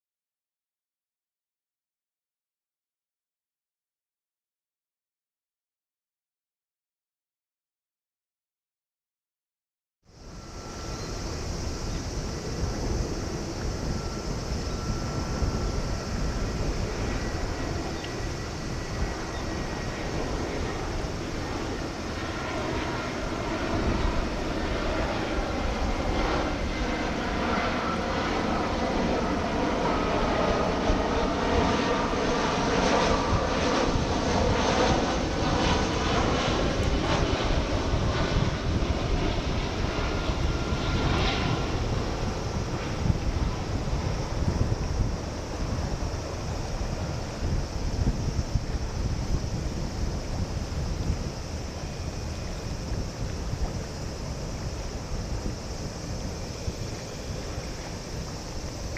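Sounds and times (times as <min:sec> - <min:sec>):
whining engine tones: 0:10.1 - 0:37.6
jet engine drone: 0:10.1 - 0:58.9.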